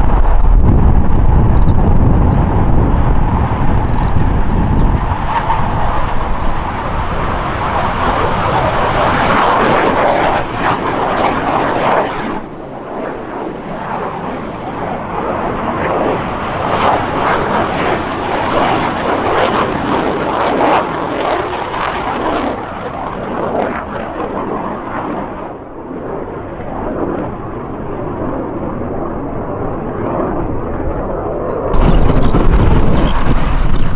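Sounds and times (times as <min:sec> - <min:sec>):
jet flying low: 0:00.0 - 0:33.9
ragged jet crackle: 0:31.8 - 0:33.9.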